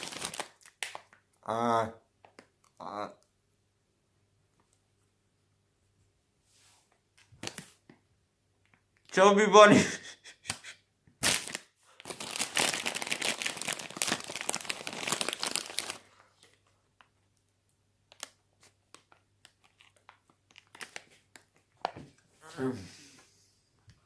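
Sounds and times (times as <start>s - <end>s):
plastic bag crinkling: 0.0s - 1.2s, 11.2s - 16.6s, 18.1s - 21.5s.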